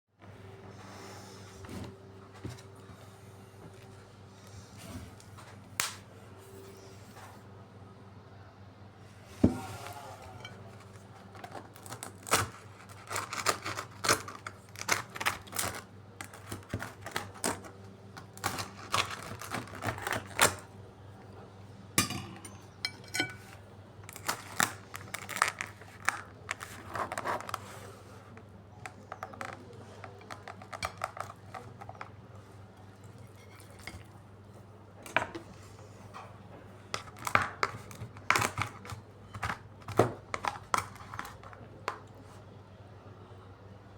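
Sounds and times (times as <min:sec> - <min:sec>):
utensils and dishes clattering: 0:22.0 - 0:26.8.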